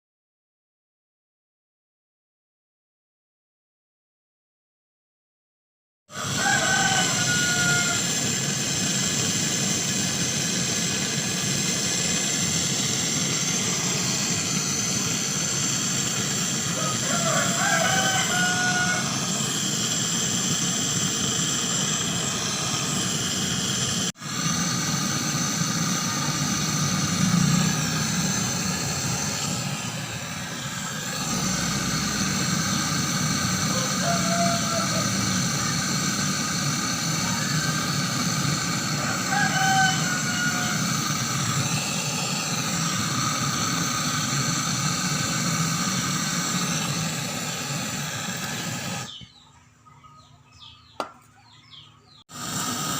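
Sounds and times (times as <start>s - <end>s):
faint chickens calling: 6.1s - 8.1s, 16.7s - 19.3s, 32.7s - 36.5s, 38.9s - 41.4s
refrigeration equipment humming: 6.1s - 49.4s.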